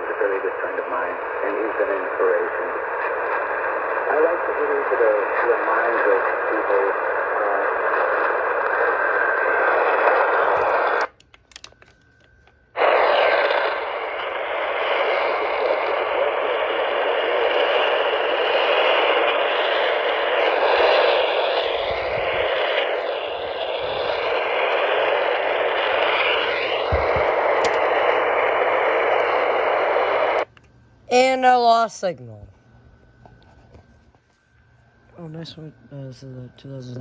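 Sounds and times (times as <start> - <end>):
radio static hiss: 0.0 - 11.2, 12.7 - 30.5.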